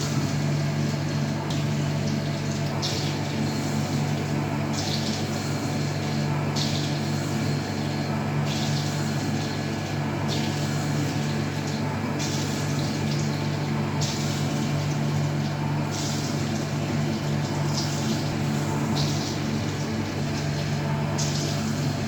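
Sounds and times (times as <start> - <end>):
machine electrical hum: 0.0 - 22.0.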